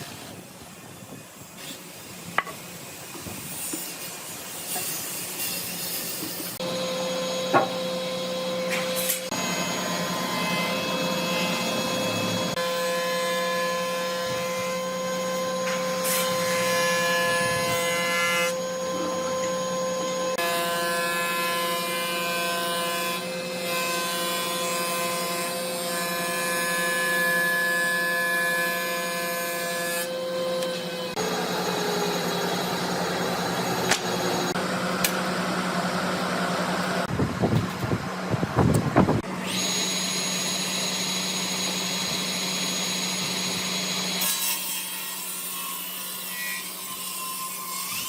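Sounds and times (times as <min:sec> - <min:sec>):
power tool motor whine: 0:05.5 - 0:38.0, 0:38.6 - 0:44.3.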